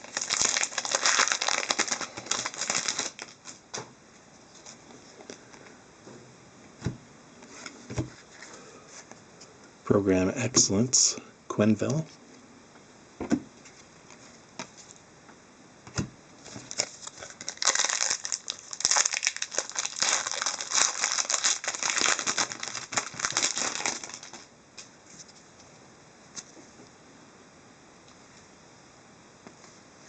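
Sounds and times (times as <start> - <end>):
plastic wrapper crinkling and tearing: 0.0 - 3.6, 16.5 - 24.5.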